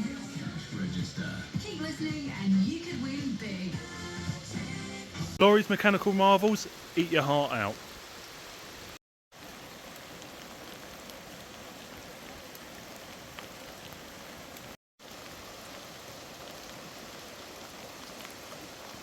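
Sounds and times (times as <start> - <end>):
raindrops ticking: 5.4 - 8.4, 9.4 - 19.0
steady rain hiss: 5.4 - 19.0.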